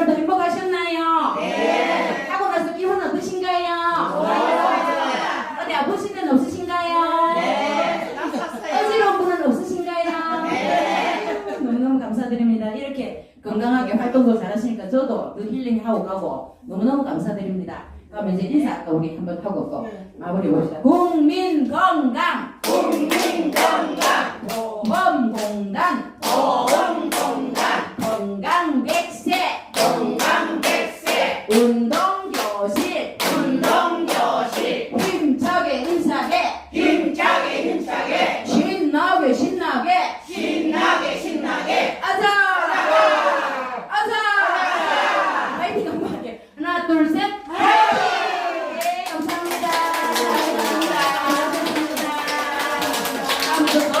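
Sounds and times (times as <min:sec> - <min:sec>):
voices chanting: 0:01.3 - 0:02.3, 0:04.0 - 0:05.6, 0:07.3 - 0:09.1, 0:36.7 - 0:38.7, 0:40.1 - 0:45.6
group shouting and cheering: 0:01.3 - 0:02.4, 0:04.0 - 0:05.8, 0:07.3 - 0:09.3, 0:10.2 - 0:11.6, 0:40.1 - 0:45.9, 0:47.4 - 0:54.0
group clapping in unison: 0:22.6 - 0:38.4, 0:47.6 - 0:54.0
hand claps: 0:48.8 - 0:54.0.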